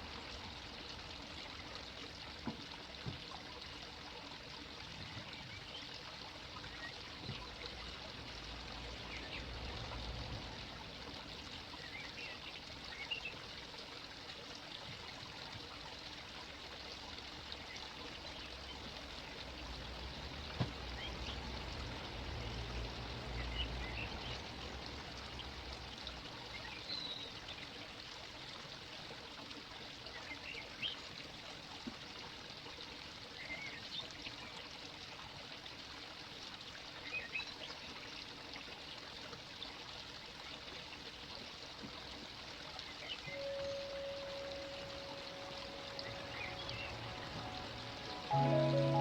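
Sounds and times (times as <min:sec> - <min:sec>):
faint bird chirps: 0:43.1 - 0:49.0
steady mid-pitched tone: 0:43.3 - 0:49.0.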